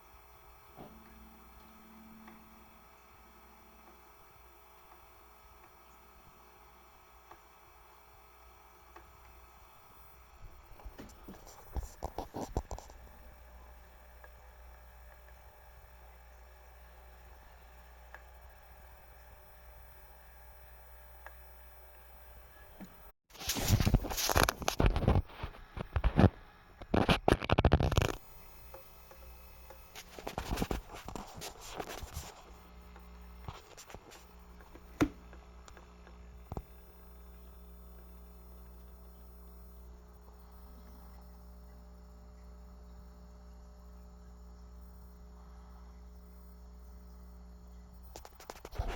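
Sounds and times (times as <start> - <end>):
aquarium heater clicking: 0.0 - 22.1, 22.8 - 45.3
faint steady hum: 0.0 - 48.9
scraping and rustling: 23.3 - 28.2, 29.9 - 32.6.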